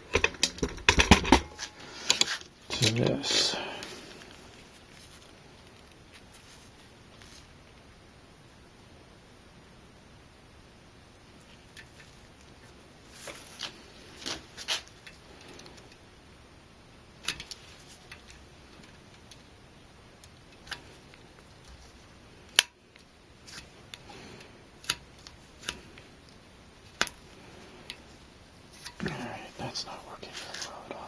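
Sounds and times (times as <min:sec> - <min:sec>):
small clicks and scrapes: 0:00.1 - 0:03.0, 0:11.4 - 0:16.0, 0:17.2 - 0:19.6, 0:20.2 - 0:29.2.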